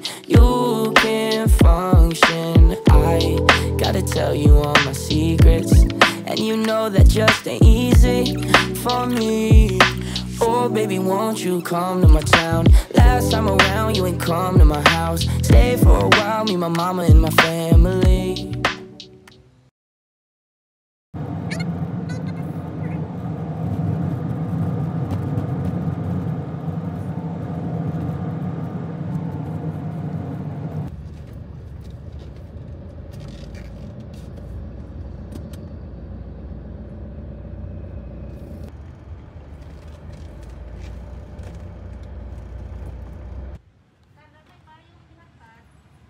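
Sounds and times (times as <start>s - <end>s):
motor vehicle road noise: 0.0s - 19.4s, 21.2s - 46.0s.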